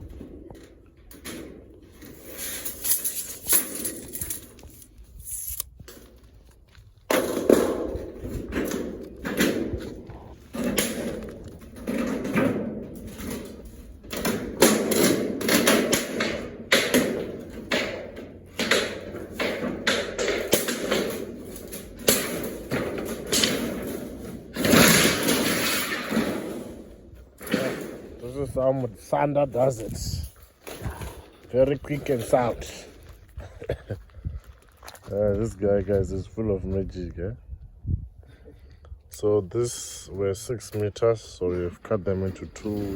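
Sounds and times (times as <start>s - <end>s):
metal roofing sheets knocking and rattling: 7.1s - 32.8s.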